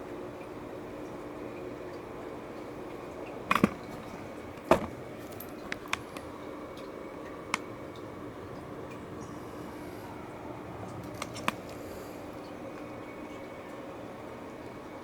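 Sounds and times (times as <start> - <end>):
laptop clicks and knocks: 3.5 - 5.0.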